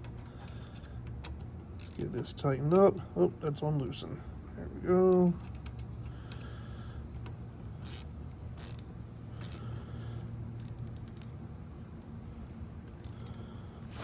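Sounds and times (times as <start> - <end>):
steady low hum: 0.0 - 14.0
metallic ratchet clicks: 7.8 - 9.8, 10.6 - 11.4, 13.0 - 13.5.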